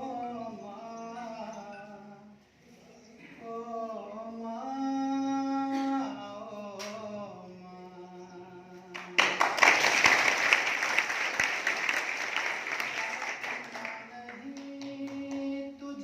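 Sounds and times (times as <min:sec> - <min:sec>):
man singing long notes: 0:00.0 - 0:02.4, 0:03.3 - 0:09.2, 0:12.9 - 0:16.0
audience applause: 0:09.2 - 0:14.1.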